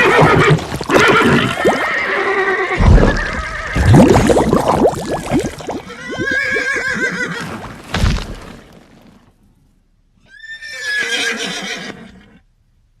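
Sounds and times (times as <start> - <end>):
pony whinnying: 0.0 - 3.9, 5.8 - 7.9, 10.2 - 12.4.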